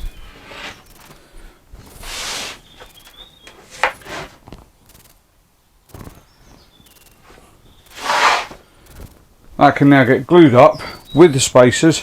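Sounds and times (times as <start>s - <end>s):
wooden parts scraping: 1.8s - 4.6s, 7.8s - 9.0s.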